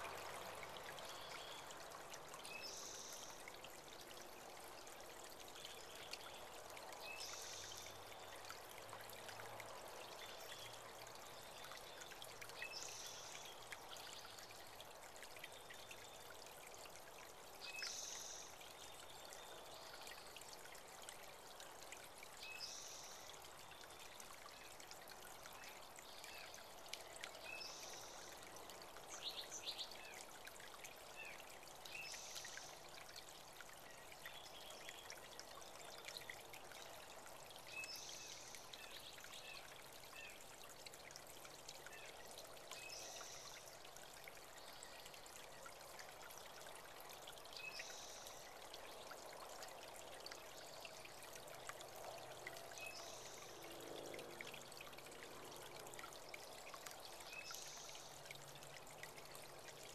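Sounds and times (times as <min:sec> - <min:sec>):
creek water trickling: 0:00.0 - 0:59.9.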